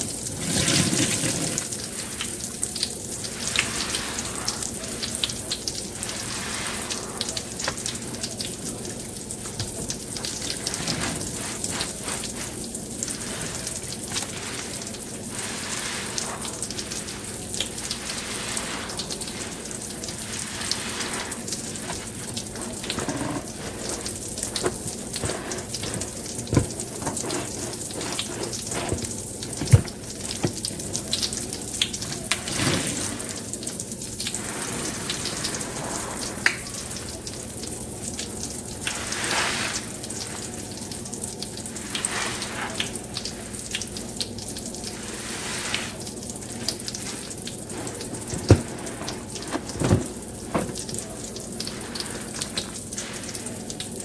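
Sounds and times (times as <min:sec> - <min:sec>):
wet soapy crackling and fizzing: 0:00.0 - 0:54.0.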